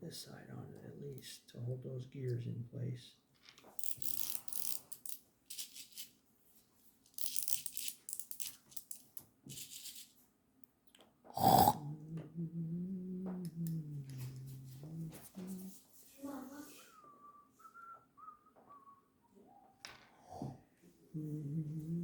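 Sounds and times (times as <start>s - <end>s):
plastic toy parts rattling: 3.4s - 6.1s, 7.1s - 10.1s.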